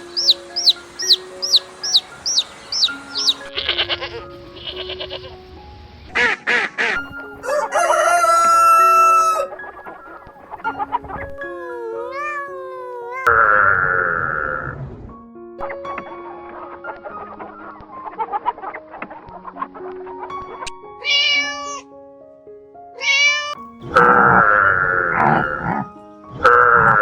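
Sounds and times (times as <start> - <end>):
long steady-pitched call: 0.0 - 4.0
animal and bird calls: 0.0 - 5.4, 6.2 - 11.4
background music with held notes: 0.0 - 27.0.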